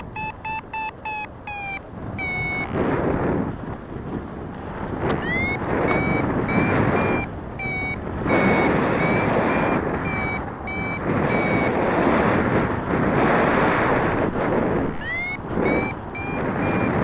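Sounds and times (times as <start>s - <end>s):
variometer short high beeps: 0.0s - 2.8s, 5.2s - 11.8s, 15.0s - 17.0s
wind rushing over microphone: 0.0s - 17.0s.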